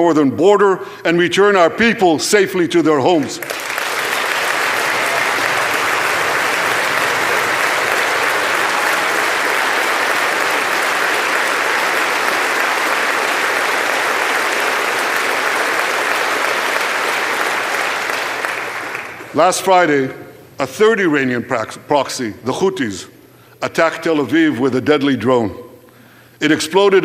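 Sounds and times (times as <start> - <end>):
large audience applauding: 3.4 - 19.4.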